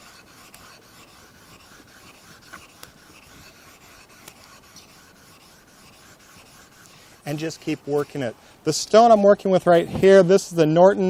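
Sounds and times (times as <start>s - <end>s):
sharp ticks: 0.4s - 5.0s.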